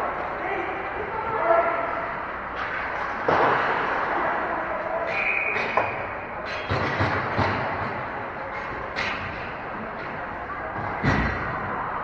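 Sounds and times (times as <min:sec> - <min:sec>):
arena noise: 0:00.0 - 0:12.0
hockey sticks and puck knocking: 0:05.1 - 0:09.4.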